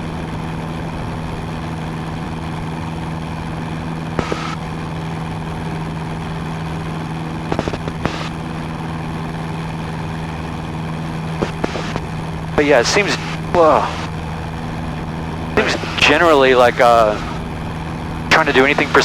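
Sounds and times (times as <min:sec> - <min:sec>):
propeller plane engine drone: 0:00.0 - 0:19.0
sharp clicks: 0:04.2 - 0:04.6, 0:07.5 - 0:08.4, 0:11.4 - 0:14.1, 0:15.6 - 0:17.4.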